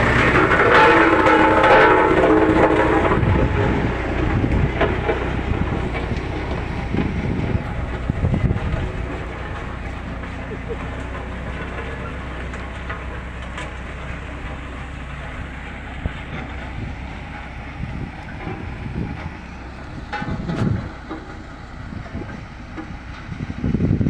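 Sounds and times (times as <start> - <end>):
backhoe diesel engine droning: 0.0 - 24.0.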